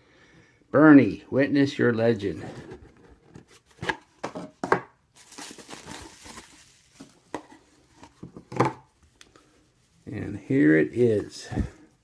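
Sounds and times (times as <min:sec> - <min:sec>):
box clicks and knocks: 0:03.8 - 0:04.9
plastic and paper crinkling: 0:05.1 - 0:11.4.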